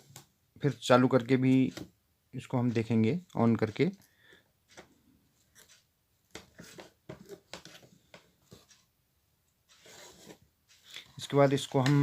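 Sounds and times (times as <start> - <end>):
hands handling speaker: 10.2 - 12.0.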